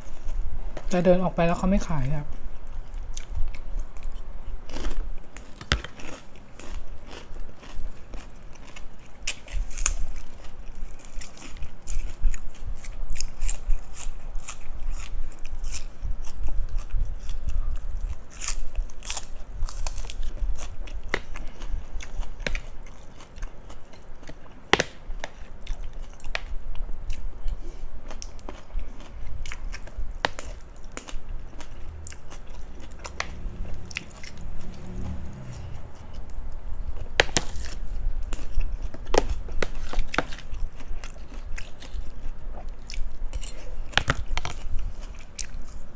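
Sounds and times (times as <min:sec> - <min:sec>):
chewing crunchy food: 0:02.2 - 0:45.9.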